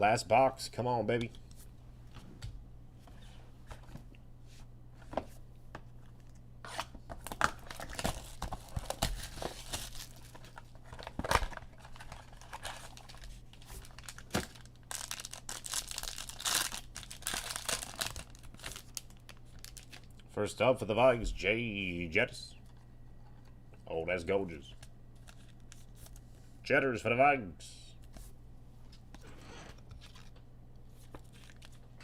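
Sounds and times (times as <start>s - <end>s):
foil packs tearing and crinkling: 6.7s - 20.1s, 31.0s - 32.0s.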